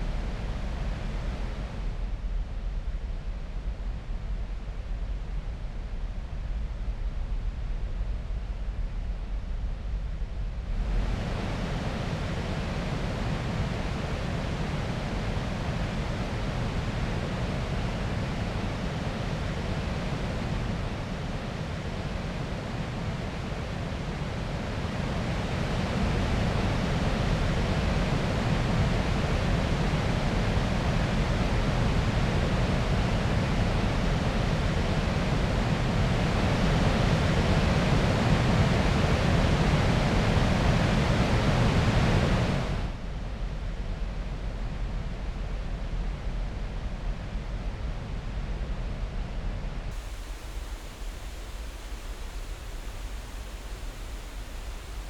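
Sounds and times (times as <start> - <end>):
water rushing: 50.0 - 55.0.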